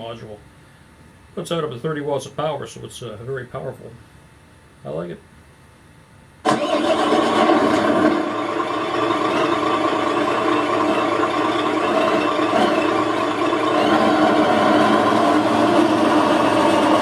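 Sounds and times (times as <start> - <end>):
truck diesel engine through speaker: 6.5 - 17.0.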